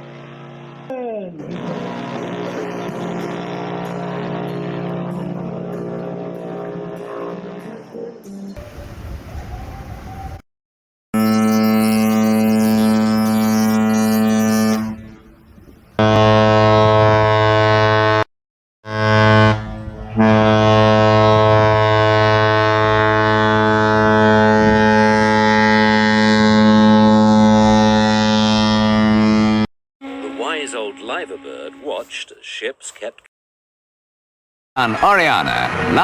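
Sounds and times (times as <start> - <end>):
deep ship's horn blasts: 1.5 - 10.4, 11.2 - 30.4.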